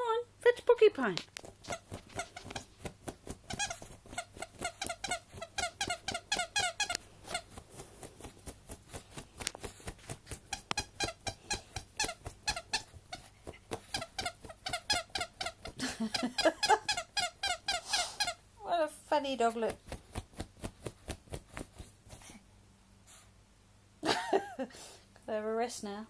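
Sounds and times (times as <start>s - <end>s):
dog paws scraping a sheet: 1.2s - 15.6s, 19.5s - 22.4s.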